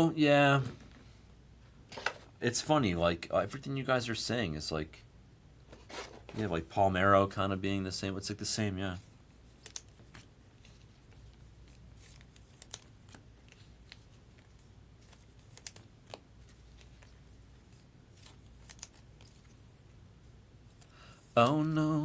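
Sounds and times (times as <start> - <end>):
low steady hum: 0.0 - 22.0
trading cards clicking and sliding: 9.5 - 19.8.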